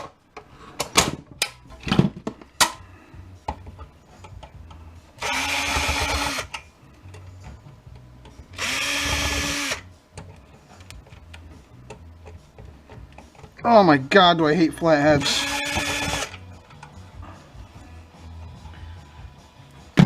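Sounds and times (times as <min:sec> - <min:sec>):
power drill motor running: 0:05.2 - 0:06.5, 0:08.6 - 0:09.8, 0:15.2 - 0:16.4.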